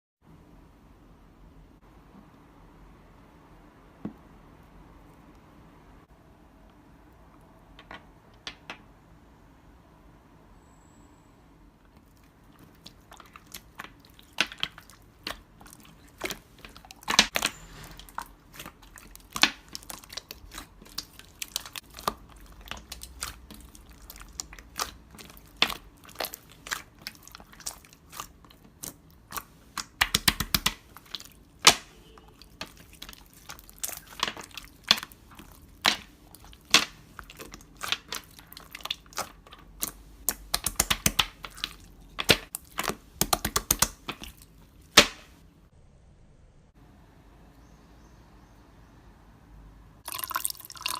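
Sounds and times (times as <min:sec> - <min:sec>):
slime squelching wet clicks: 0:11.9 - 0:45.2.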